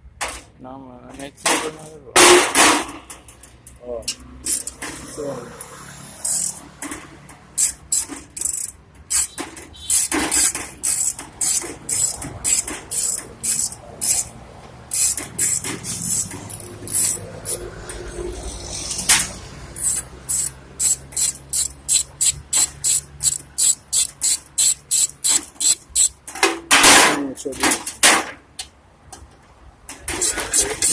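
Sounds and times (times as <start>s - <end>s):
hand tool scraping metal: 4.1s - 26.2s, 30.0s - 30.9s.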